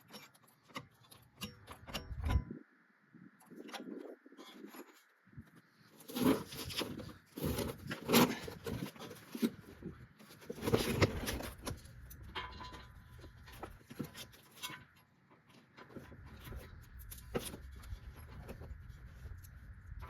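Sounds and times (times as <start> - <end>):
metal clunks and scrapes: 0.0 - 2.6, 3.6 - 20.0
quiet metal clinks: 11.9 - 15.0.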